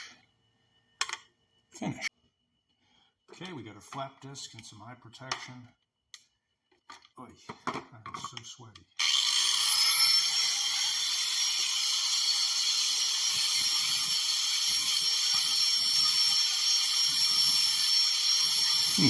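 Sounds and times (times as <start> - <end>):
grinder grinding metal: 9.0 - 19.0.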